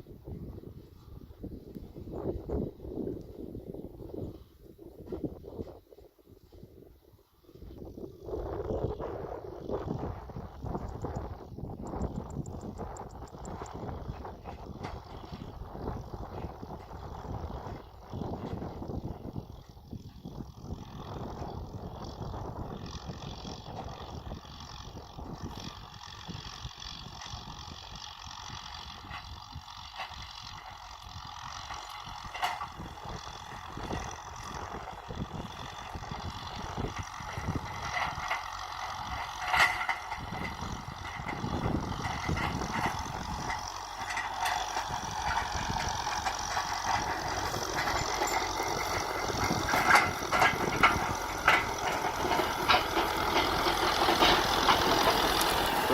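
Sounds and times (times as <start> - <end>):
tractor diesel engine running: 0.0 - 55.9
knocks and rattles: 31.5 - 55.9.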